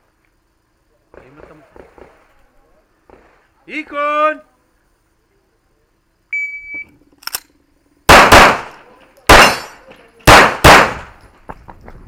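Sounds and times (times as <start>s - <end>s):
shot timer beep: 6.3s - 6.9s
pistol shots: 8.1s - 11.2s.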